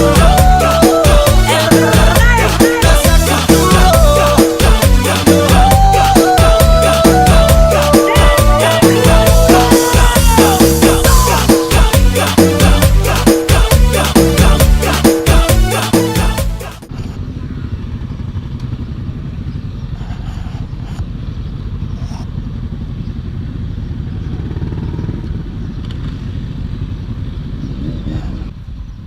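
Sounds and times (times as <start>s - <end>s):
music: 0.0s - 16.9s
motorcycle engine rumble: 0.0s - 29.0s.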